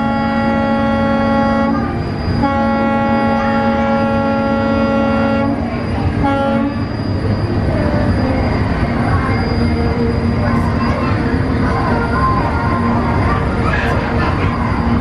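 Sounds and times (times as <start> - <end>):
horn blowing low note: 0.0 - 6.8.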